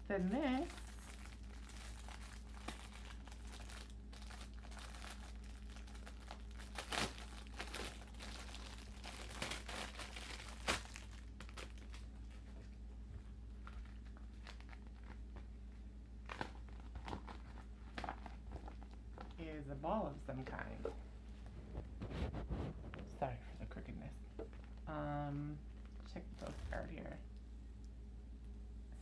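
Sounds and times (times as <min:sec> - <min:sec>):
packaging crinkling: 0:00.2 - 0:12.5, 0:13.6 - 0:19.4.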